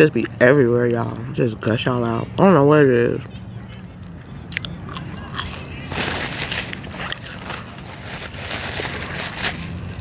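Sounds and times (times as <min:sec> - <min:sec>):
paper crinkling: 0:05.4 - 0:10.0.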